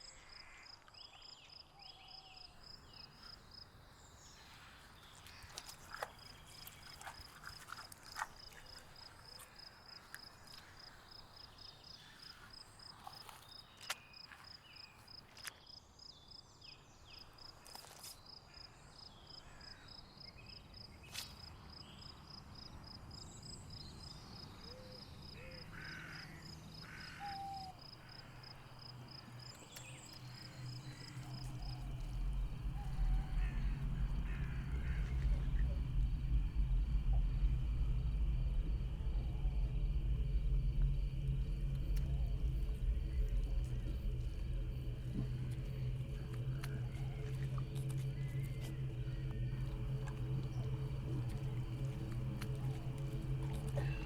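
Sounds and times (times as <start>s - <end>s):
insect chirping: 0.0s - 16.5s, 21.9s - 54.0s
low hum: 28.0s - 54.0s.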